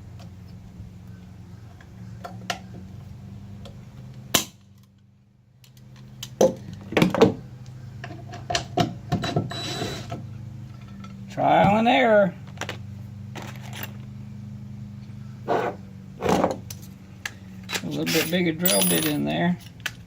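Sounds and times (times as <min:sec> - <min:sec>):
hand tools clicking and knocking: 0:17.7 - 0:19.4.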